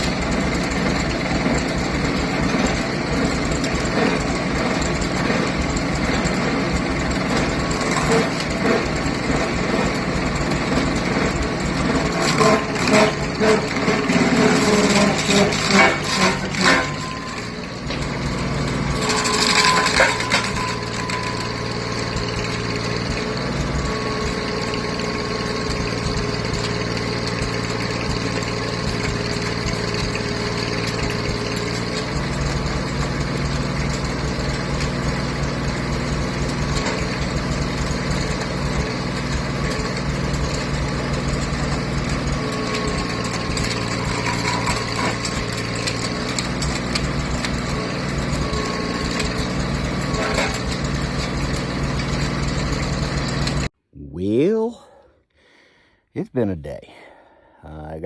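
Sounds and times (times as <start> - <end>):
engine running steadily: 0.0 - 53.7
loud rasping noise: 12.1 - 17.8.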